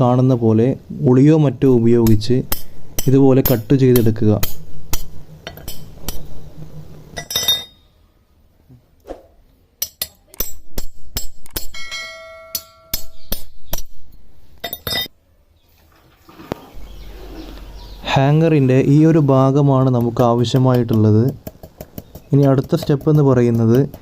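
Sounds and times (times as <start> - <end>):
chisel clinking on wire: 11.2 - 13.9
ringing metal note: 11.7 - 13.3.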